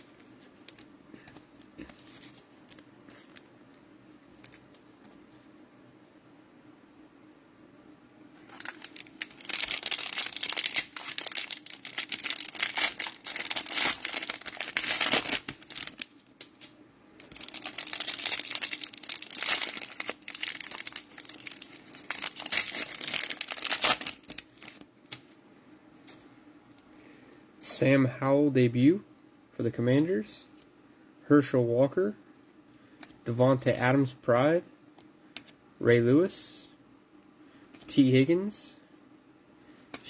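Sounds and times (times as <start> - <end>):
cellophane crinkling and tearing: 8.4 - 24.8.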